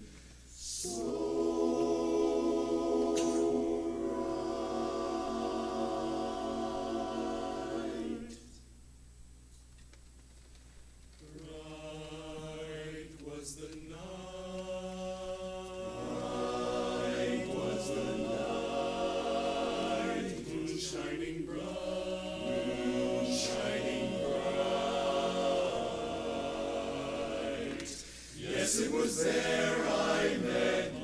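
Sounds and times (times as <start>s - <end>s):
barbershop chorus singing a cappella: 0.6s - 8.6s, 11.3s - 31.0s.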